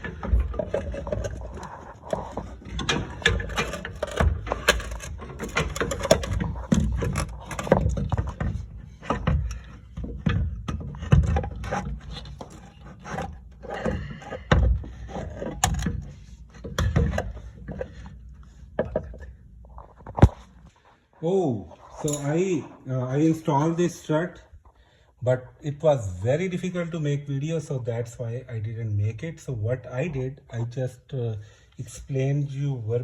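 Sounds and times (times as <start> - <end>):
metal clunks and knocks: 0.0 - 20.6.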